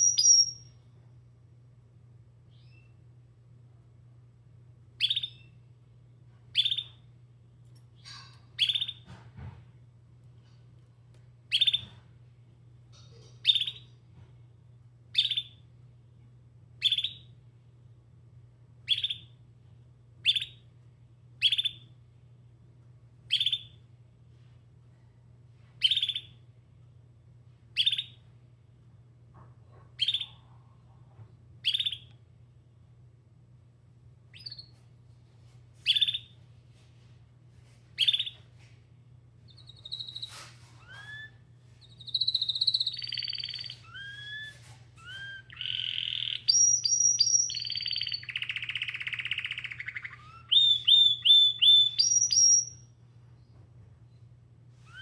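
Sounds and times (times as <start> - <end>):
canary chirping: 0.0 - 0.8, 2.5 - 2.9, 5.0 - 5.5, 6.5 - 7.0, 8.0 - 9.0, 11.5 - 11.9, 12.9 - 14.0, 15.1 - 15.6, 16.8 - 17.3, 18.9 - 19.3, 20.2 - 20.6, 21.4 - 21.8, 23.3 - 23.8, 25.8 - 26.4, 27.8 - 28.2, 30.0 - 30.4, 31.6 - 32.1, 34.3 - 34.8, 35.8 - 36.4, 38.0 - 38.4, 39.5 - 52.9.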